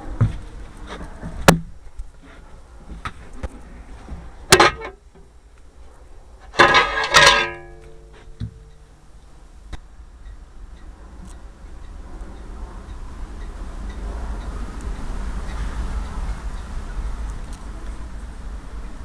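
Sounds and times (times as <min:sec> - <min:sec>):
sharp clicks and knocks: 0:04.5 - 0:05.3
clatter with ringing tone: 0:06.5 - 0:08.8.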